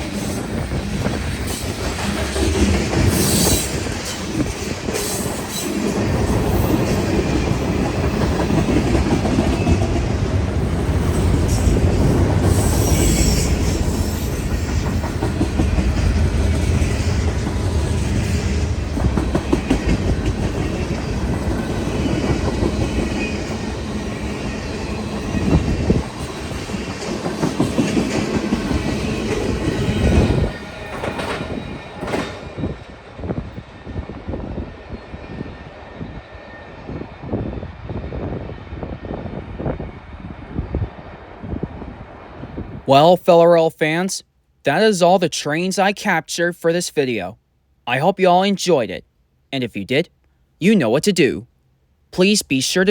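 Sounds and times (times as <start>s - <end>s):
freight train wheels clacking: 0.0s - 32.5s.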